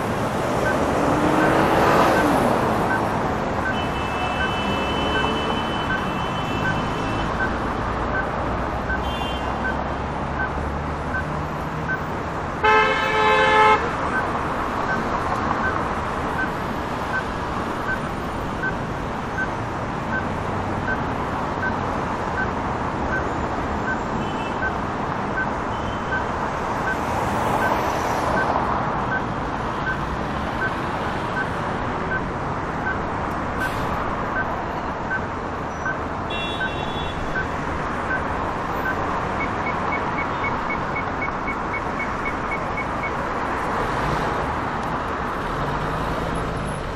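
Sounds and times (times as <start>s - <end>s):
heavy street traffic: 0.0s - 46.9s
car horn honking: 12.6s - 13.9s, 36.3s - 37.3s.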